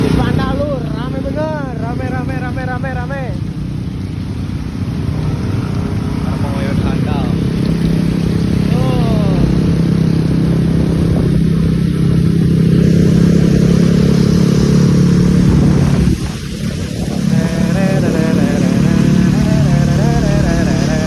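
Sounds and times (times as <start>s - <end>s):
vehicle engine running: 0.0s - 21.0s
wavering high tones: 16.4s - 21.0s.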